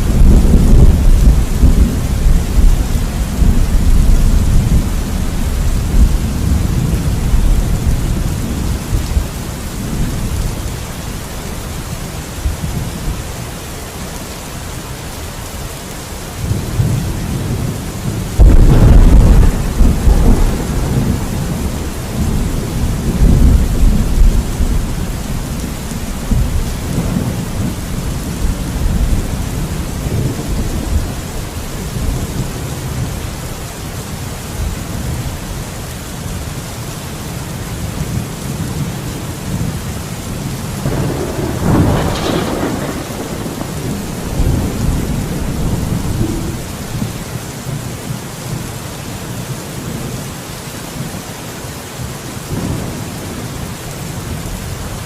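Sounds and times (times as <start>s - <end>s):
rolling thunder: 0.0s - 10.6s, 16.4s - 33.2s, 38.1s - 47.3s
heavy rain: 0.0s - 55.0s
thunder crack: 18.4s - 25.0s, 40.8s - 47.2s.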